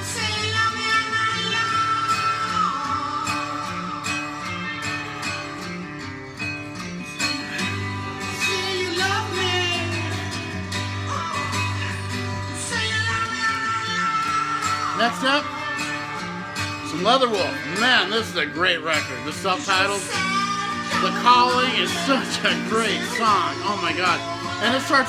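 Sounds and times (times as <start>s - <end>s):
metal song with singer: 7.3s - 25.0s.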